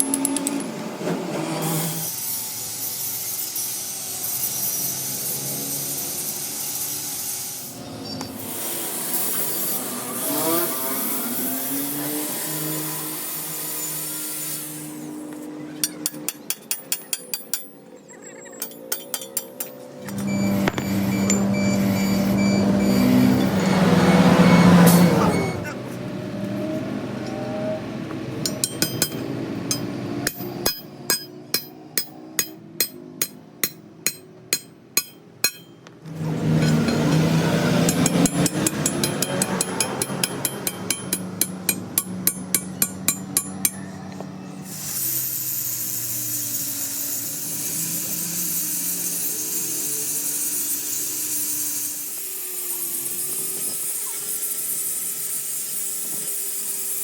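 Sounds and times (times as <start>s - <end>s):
hammer blows on metal: 28.4s - 35.8s, 36.4s - 44.0s.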